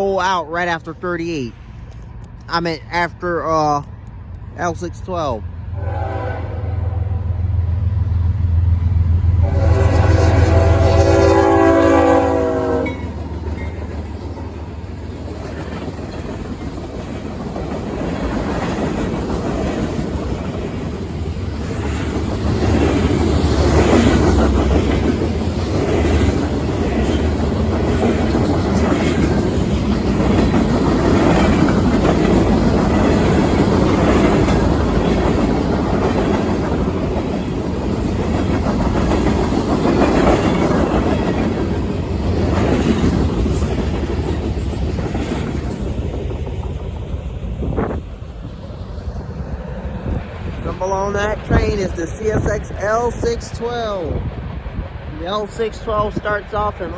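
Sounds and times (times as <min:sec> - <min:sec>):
diesel locomotive rumble: 0:00.0 - 0:56.9
train wheels clacking over rail joints: 0:15.1 - 0:46.7.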